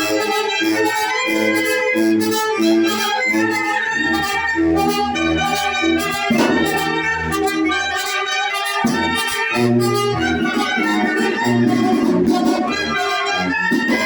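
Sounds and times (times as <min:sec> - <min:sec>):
low bass line: 0:03.8 - 0:08.0
brass band playing: 0:05.1 - 0:07.4
percussion hit: 0:05.5 - 0:07.9.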